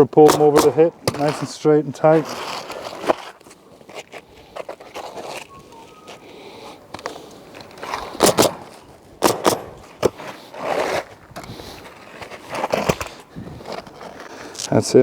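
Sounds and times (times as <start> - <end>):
shingle scraping and rustling: 0.0 - 15.0
sharp knocks on roof shingles: 7.8 - 10.3.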